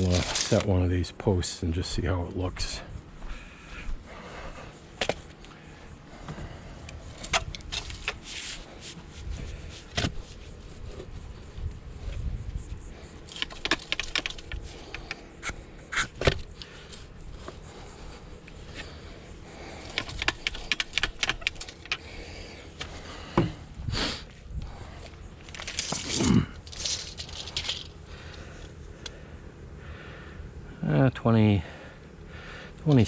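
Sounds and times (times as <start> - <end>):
post hole digger scraping soil: 0.0 - 0.8.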